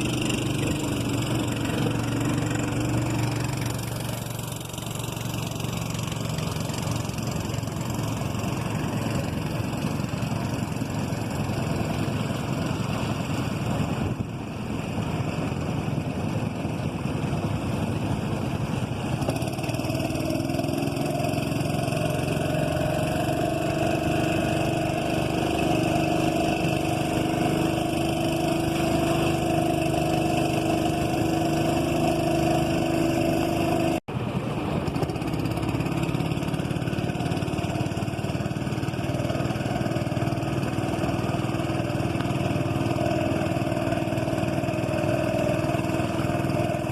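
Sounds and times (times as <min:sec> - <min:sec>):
steady droning tone: 0:00.0 - 0:34.0
boat engine running: 0:00.0 - 0:46.9.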